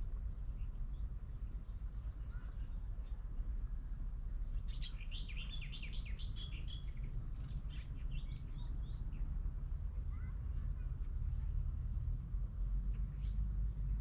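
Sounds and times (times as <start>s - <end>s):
steady low rumble: 0.0s - 14.0s
songbird twittering: 4.6s - 9.2s.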